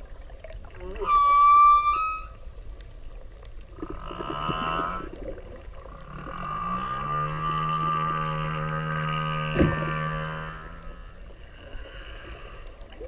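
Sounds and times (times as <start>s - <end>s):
whale calls: 0.7s - 2.6s, 3.9s - 5.2s, 6.0s - 12.6s.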